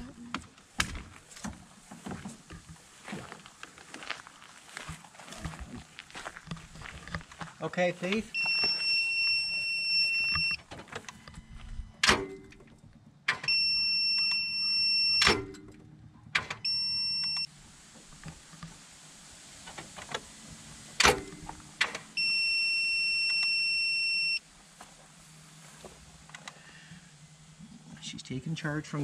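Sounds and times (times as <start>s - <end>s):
high-pitched electronic beep: 8.4s - 10.6s, 13.5s - 15.4s, 16.7s - 17.5s, 22.2s - 24.4s
sharp clunks: 12.0s - 13.5s, 21.0s - 22.1s.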